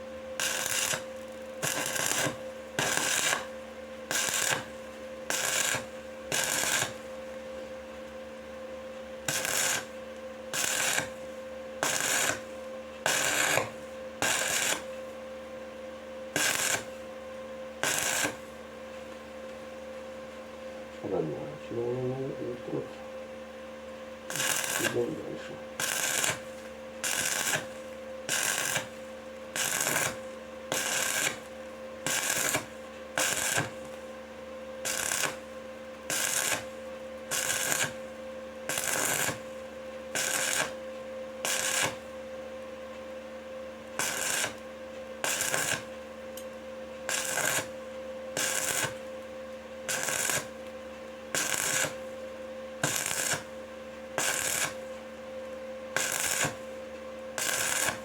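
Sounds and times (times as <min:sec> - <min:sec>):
steady hum: 0:00.0 - 0:58.0
welding arc crackling: 0:00.4 - 0:03.5, 0:04.1 - 0:07.0, 0:09.2 - 0:14.9, 0:16.3 - 0:17.0, 0:17.8 - 0:18.6, 0:24.3 - 0:34.1, 0:34.8 - 0:35.5, 0:36.1 - 0:38.0, 0:38.7 - 0:39.5, 0:40.1 - 0:40.8, 0:41.4 - 0:42.0, 0:44.0 - 0:44.6, 0:45.2 - 0:45.9, 0:47.1 - 0:47.7, 0:48.4 - 0:49.1, 0:49.9 - 0:50.7, 0:51.3 - 0:52.1, 0:52.8 - 0:53.5, 0:54.2 - 0:54.8, 0:56.0 - 0:56.8, 0:57.4 - 0:58.0.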